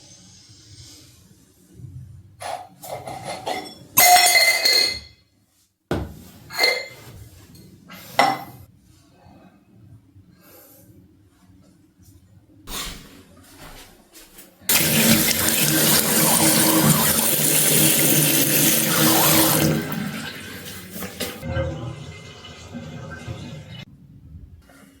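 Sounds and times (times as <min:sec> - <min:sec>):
dishes clinking and knocking: 0:02.4 - 0:05.2, 0:05.9 - 0:07.1
tap water running: 0:14.7 - 0:23.9.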